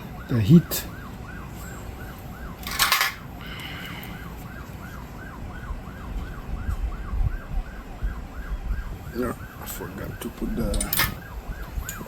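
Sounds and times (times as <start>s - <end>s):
electronic siren-like warble: 4.2s - 12.0s.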